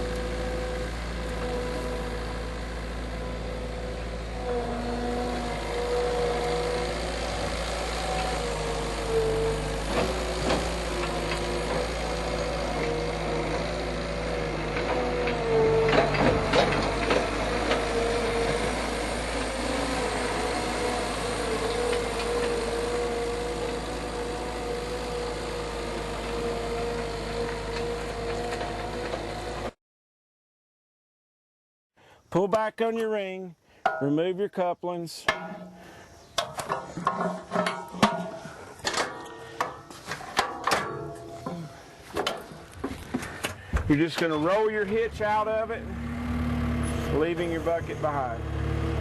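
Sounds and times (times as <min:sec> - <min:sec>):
skid steer engine running: 0:00.0 - 0:29.8, 0:35.3 - 0:49.0
sharp metal clanks: 0:33.8 - 0:34.1, 0:35.2 - 0:42.5.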